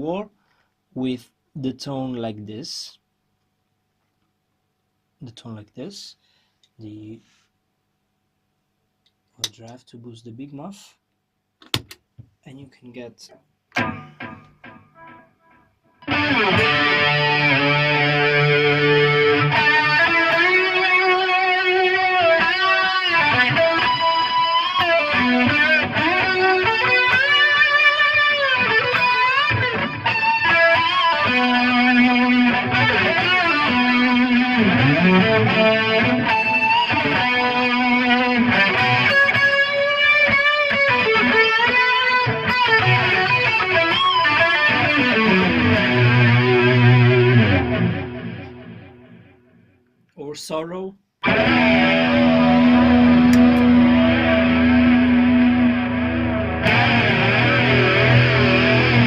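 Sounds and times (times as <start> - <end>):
distorted electric guitar solo: 13.7 - 49.7, 51.2 - 59.0.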